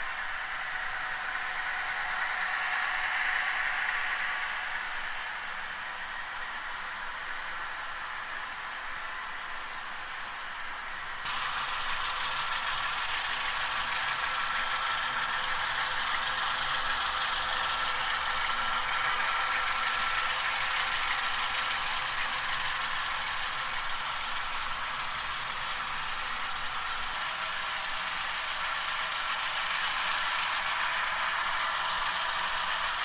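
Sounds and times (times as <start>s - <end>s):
model locomotives rattling: 0.0s - 33.0s
model train engine sounds: 0.0s - 33.0s.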